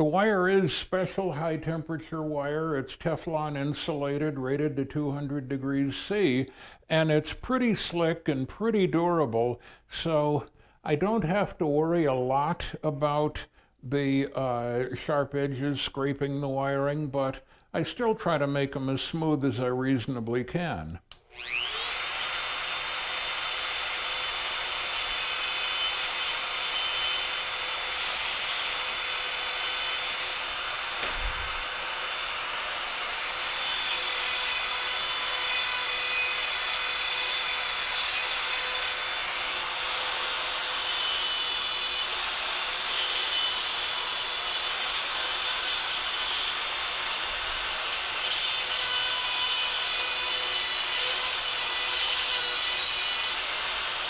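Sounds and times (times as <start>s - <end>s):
rotary tool grinding metal: 21.4s - 54.0s.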